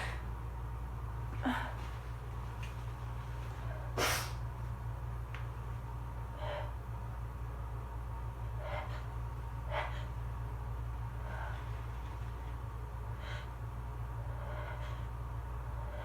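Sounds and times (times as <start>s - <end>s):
steady low hum: 0.0s - 16.0s
person sneezing: 4.0s - 4.4s
soft breaths: 8.5s - 16.0s.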